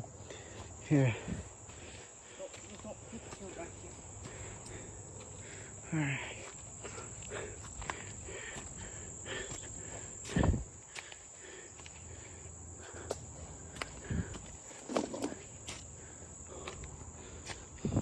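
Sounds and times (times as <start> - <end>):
footsteps on woodland ground: 0.0 - 18.0
high insect drone: 0.0 - 18.0.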